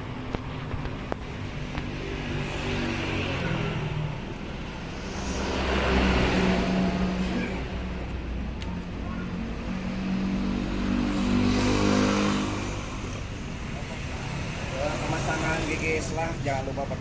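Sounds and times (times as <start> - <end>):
motorcycle engine revving: 9.7 - 16.0.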